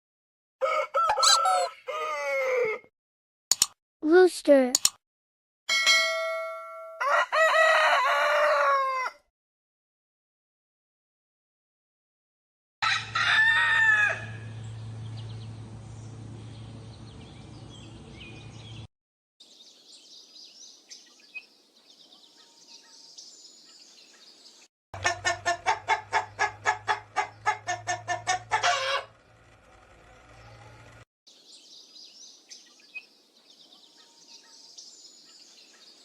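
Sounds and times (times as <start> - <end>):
rooster crowing: 0.6 - 2.9, 7.0 - 9.2, 12.8 - 14.5
chicken clucking: 1.0 - 1.7, 25.0 - 29.0
small birds chirping: 1.2 - 1.7, 15.0 - 24.7, 31.3 - 36.0.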